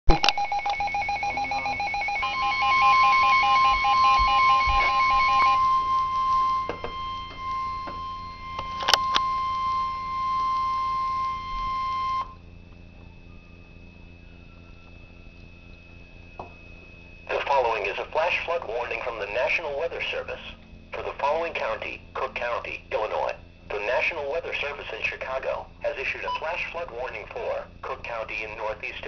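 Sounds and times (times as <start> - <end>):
rapid electronic beeping: 0.1 - 12.3
steady warning alarm tone: 0.1 - 29.0
faint radio hiss: 17.2 - 29.0.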